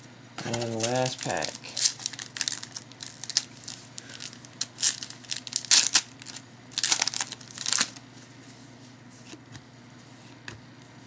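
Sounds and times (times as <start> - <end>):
plastic wrapper crinkling and tearing: 0.5 - 8.0.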